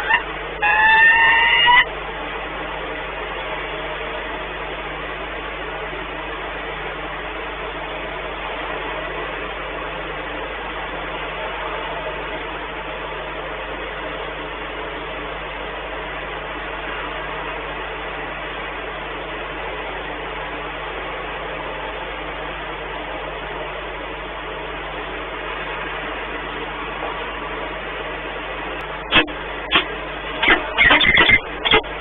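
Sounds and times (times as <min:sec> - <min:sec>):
machinery drone: 0:00.0 - 0:03.8, 0:28.8 - 0:32.0
low hum: 0:28.7 - 0:32.0.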